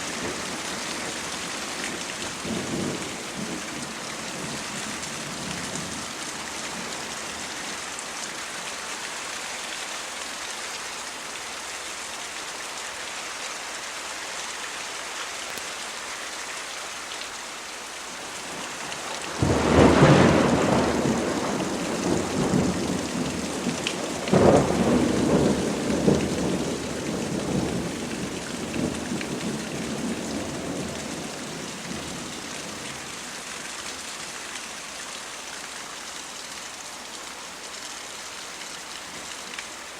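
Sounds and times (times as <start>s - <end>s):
steady rain falling: 0.0s - 39.9s
thunder rumbling: 18.5s - 32.8s.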